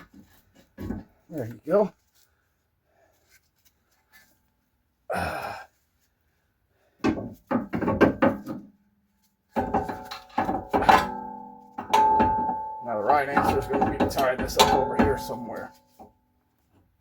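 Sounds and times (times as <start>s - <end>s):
metal tools clanking: 9.6s - 16.0s
metallic ringing: 9.8s - 16.1s.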